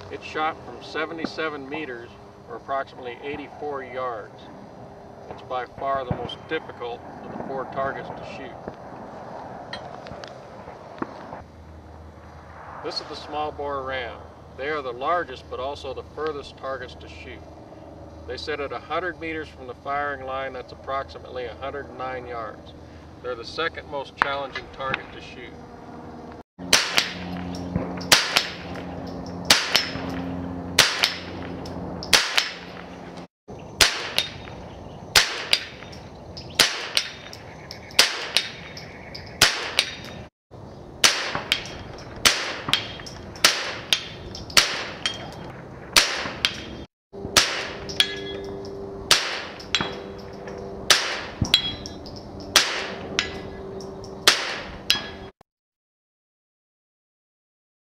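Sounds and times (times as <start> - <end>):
rifle shots: 26.7 - 31.5, 32.1 - 32.9, 33.8 - 34.3, 35.2 - 35.8, 36.6 - 37.2, 38.0 - 38.5, 39.4 - 39.9, 41.0 - 42.8, 43.4 - 44.0, 44.6 - 45.1, 46.0 - 46.5, 47.3 - 47.9, 49.1 - 50.0, 50.9 - 51.4, 52.5 - 53.0, 54.3 - 54.8.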